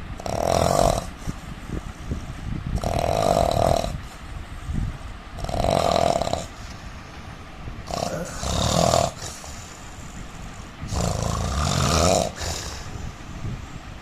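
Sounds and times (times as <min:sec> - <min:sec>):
man snoring: 0:00.2 - 0:01.3, 0:02.8 - 0:04.1, 0:05.4 - 0:06.6, 0:07.8 - 0:09.8, 0:10.9 - 0:13.0
quiet breathing: 0:00.9 - 0:05.5, 0:06.2 - 0:14.0.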